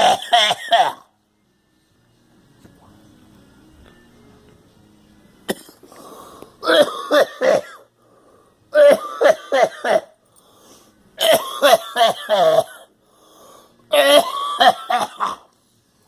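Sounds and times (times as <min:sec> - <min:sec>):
person coughing: 0:00.0 - 0:01.1, 0:05.5 - 0:05.9, 0:06.6 - 0:07.9, 0:08.8 - 0:10.2, 0:11.2 - 0:12.9, 0:13.9 - 0:15.5.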